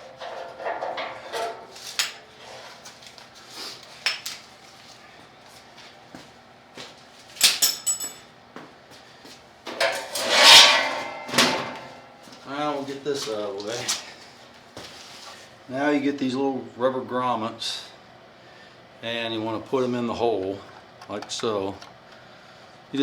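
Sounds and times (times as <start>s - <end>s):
scraping rustling noise: 0.0s - 3.8s, 9.8s - 14.1s
metal tools clicking and clanking: 7.4s - 8.2s, 9.7s - 12.0s.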